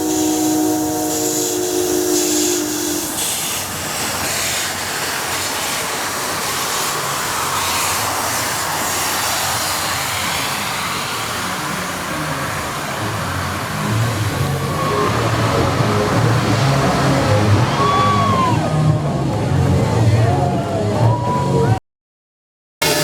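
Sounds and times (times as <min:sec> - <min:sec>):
steam whistle: 0:00.0 - 0:03.8, 0:14.6 - 0:18.6
hissing steam: 0:00.0 - 0:18.2
train rumbling: 0:00.0 - 0:21.8.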